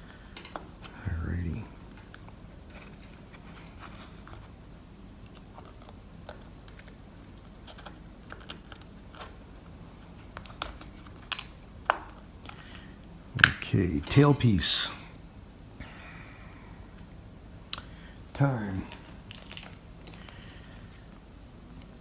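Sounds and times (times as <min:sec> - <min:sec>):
small metal parts clicking: 0:14.0 - 0:14.4.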